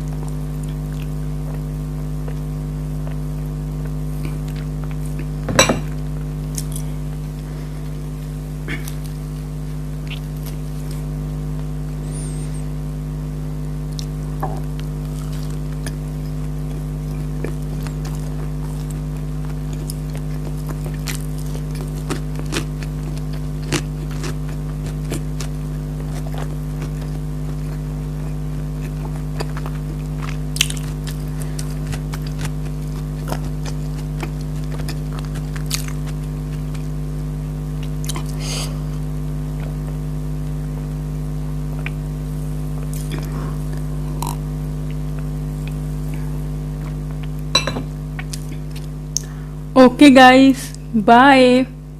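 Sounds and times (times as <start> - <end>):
chewing and crunching: 0.0 - 5.4, 13.9 - 37.0, 37.7 - 38.4, 42.7 - 47.5, 48.1 - 49.4.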